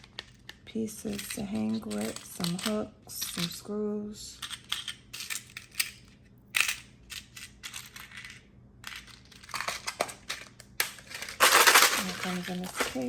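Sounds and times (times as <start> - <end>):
small tool pieces clicking and rattling: 0.0 - 3.7, 4.4 - 13.0
plastic packaging rustling: 11.0 - 13.0.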